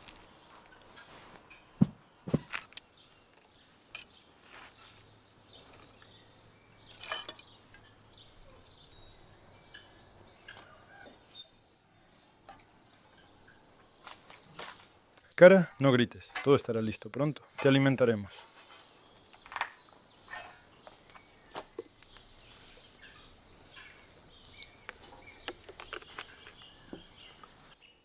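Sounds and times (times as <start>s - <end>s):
faint bird chirps: 18.4s - 28.0s.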